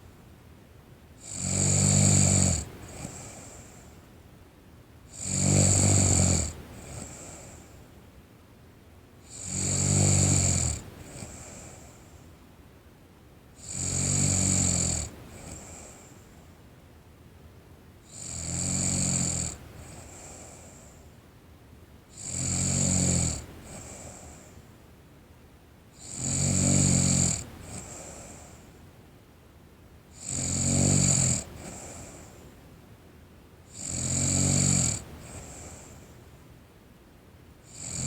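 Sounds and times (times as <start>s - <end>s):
person snoring: 5.2s - 7.4s, 26.0s - 28.2s, 33.8s - 35.9s.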